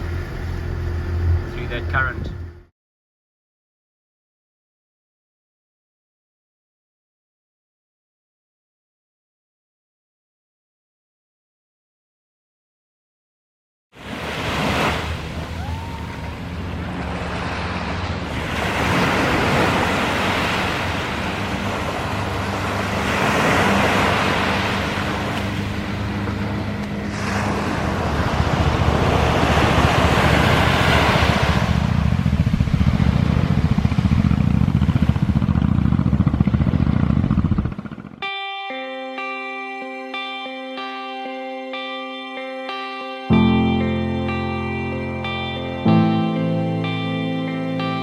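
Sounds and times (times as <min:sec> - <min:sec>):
diesel engine running: 0:00.0 - 0:02.7, 0:14.7 - 0:38.2
rush of wind and water: 0:14.0 - 0:37.9.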